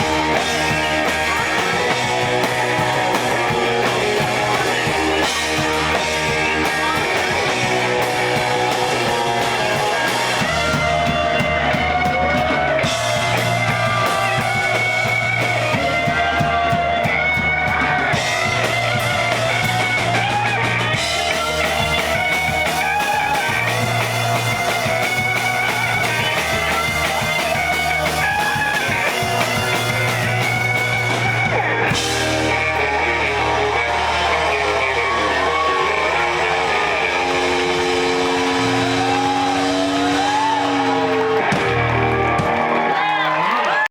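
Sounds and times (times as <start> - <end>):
drum kit: 0.0 - 43.8
bass guitar: 0.0 - 43.9
electric guitar: 0.0 - 43.9.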